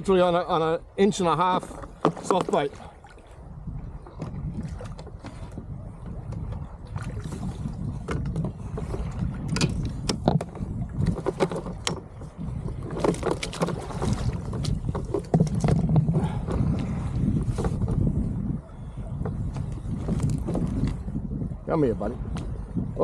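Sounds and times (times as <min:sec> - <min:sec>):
wind rumble on microphone: 0:00.0 - 0:23.0
water splashes: 0:01.0 - 0:17.8
gear knocking on plastic kayak: 0:01.5 - 0:02.6, 0:07.8 - 0:18.2.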